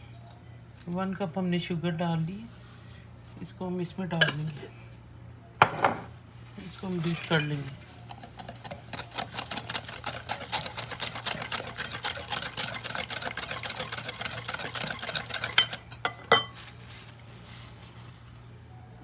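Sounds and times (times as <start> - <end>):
whisk clicking against bowl: 8.1 - 16.5.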